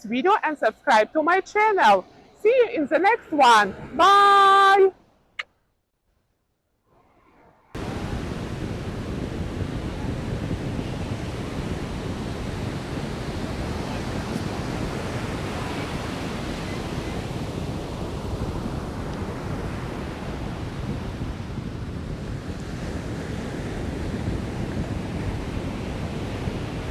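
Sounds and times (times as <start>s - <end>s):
wind rumbling on microphone: 7.0s - 26.9s
surf washing onto beach: 7.8s - 26.9s.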